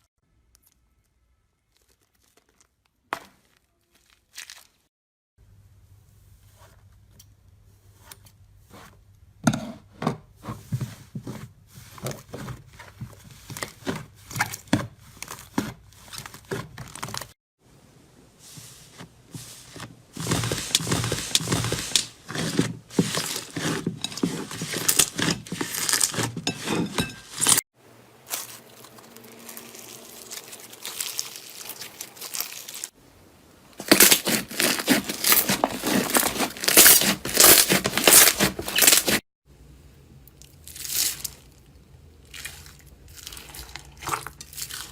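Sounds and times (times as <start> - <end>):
slime crunching and squishing: 1.6 - 4.9, 10.6 - 17.4, 19.4 - 27.6, 28.2 - 33.0, 33.8 - 39.2, 40.4 - 44.9.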